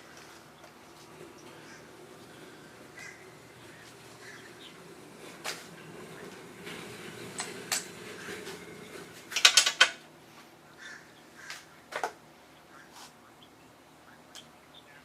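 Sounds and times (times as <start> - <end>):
faint steady hum: 0.0 - 15.0
hard objects clicking and knocking: 0.6 - 10.0.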